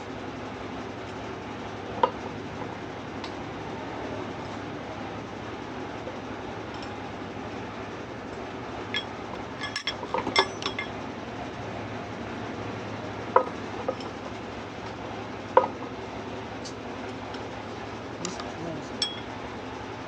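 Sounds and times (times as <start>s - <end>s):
steady background noise: 0.0s - 20.0s
metal tools clinking: 9.0s - 10.9s, 19.0s - 19.3s.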